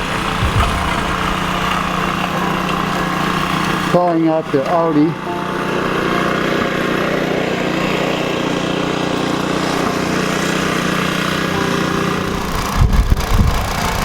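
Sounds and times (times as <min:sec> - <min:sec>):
vehicle engine and road drone: 0:00.0 - 0:04.0
heavy low rumbling jolts: 0:00.0 - 0:05.0.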